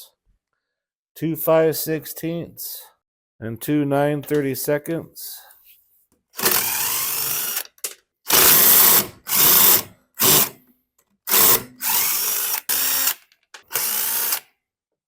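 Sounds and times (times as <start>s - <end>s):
power driver spinning out screws: 6.4s - 7.7s, 8.3s - 10.6s, 11.3s - 14.4s.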